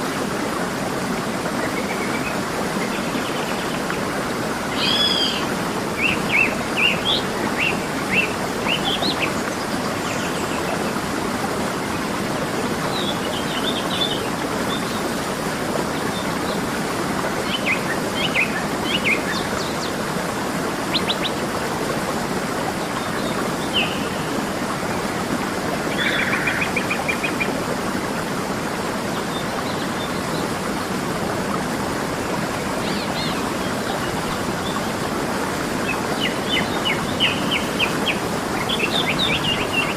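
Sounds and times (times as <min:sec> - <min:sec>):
waterfall rushing: 0:00.0 - 0:39.9
songbirds chirping: 0:23.0 - 0:27.6.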